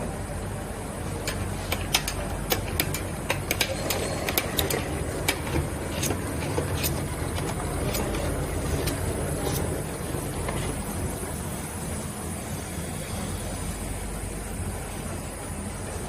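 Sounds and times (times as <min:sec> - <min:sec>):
machine hum: 0:00.0 - 0:16.0
sharp machine clicks and clacks: 0:01.2 - 0:09.7.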